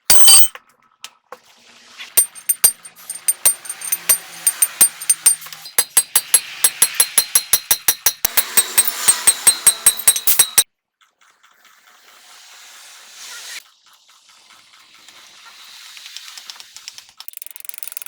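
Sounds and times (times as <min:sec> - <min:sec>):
rapid metallic clicking: 0:02.2 - 0:10.6.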